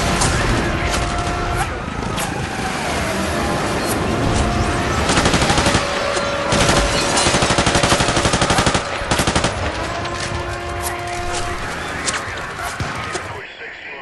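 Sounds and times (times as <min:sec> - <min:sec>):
automatic gunfire bursts: 0:04.8 - 0:10.0.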